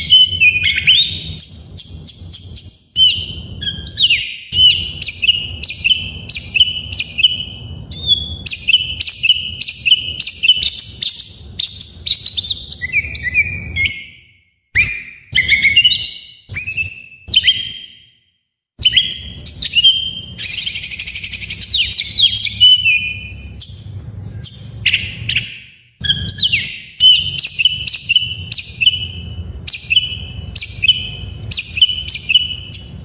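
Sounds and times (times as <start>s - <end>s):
bird singing chirps and whistles: 0.0s - 33.0s.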